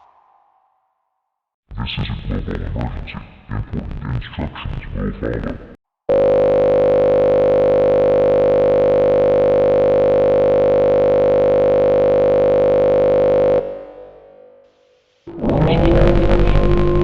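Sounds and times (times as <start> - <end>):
buzzy alert tone drone: 15.3 - 17.0.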